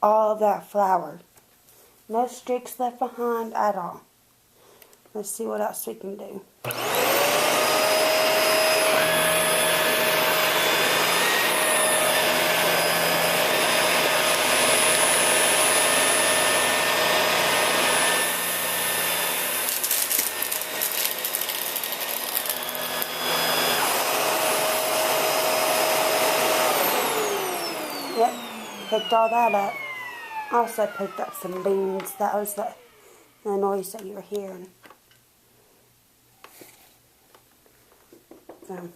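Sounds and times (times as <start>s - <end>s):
upright vacuum running: 6.6s - 33.6s
dry beans rattling in vacuum: 19.6s - 23.2s.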